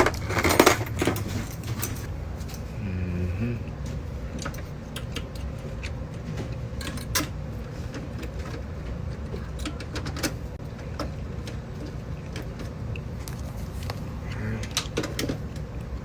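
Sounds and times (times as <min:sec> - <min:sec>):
steady low hum: 0:00.0 - 0:09.8.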